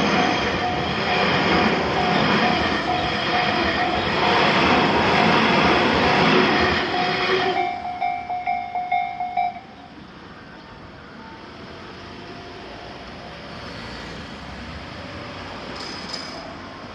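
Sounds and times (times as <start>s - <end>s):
passing train: 0.0s - 16.9s
level crossing bell dinging: 7.0s - 9.8s.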